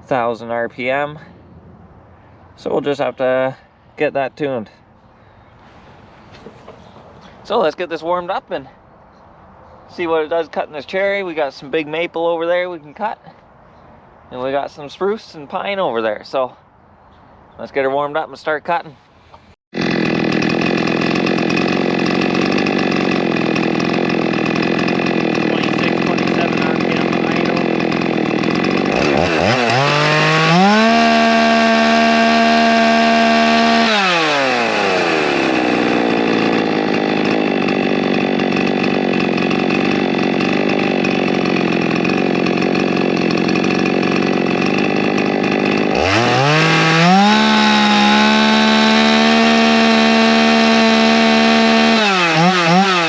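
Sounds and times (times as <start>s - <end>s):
chainsaw running and revving: 19.8s - 53.0s.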